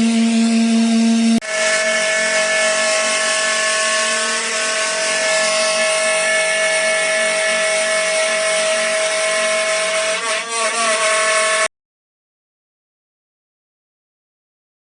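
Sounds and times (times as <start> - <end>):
router spindle whining while cutting: 0.0 - 11.7.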